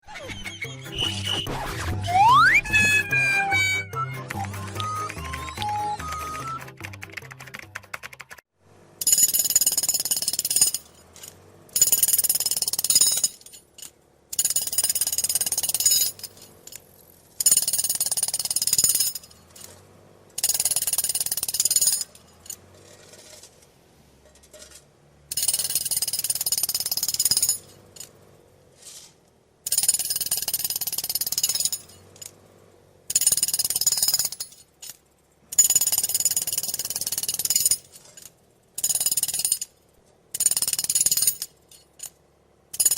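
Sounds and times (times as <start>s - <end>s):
jackhammer hammering: 2.9s - 23.6s, 25.3s - 28.7s, 29.6s - 42.9s.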